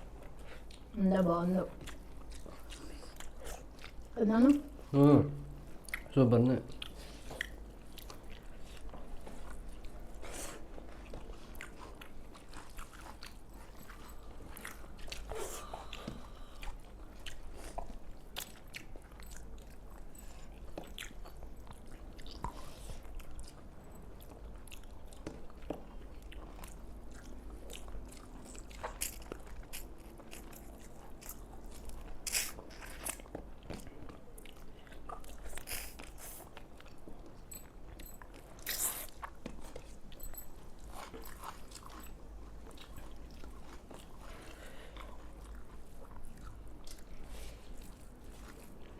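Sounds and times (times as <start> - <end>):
people chewing food: 0.0 - 48.9.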